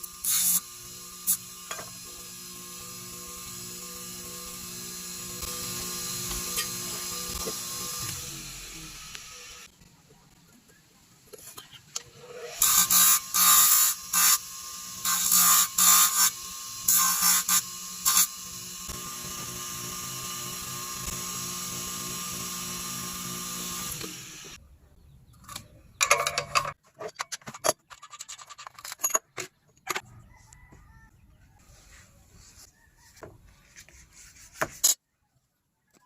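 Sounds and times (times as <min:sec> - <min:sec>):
electric power tool running: 0:00.0 - 0:09.7, 0:12.5 - 0:24.6.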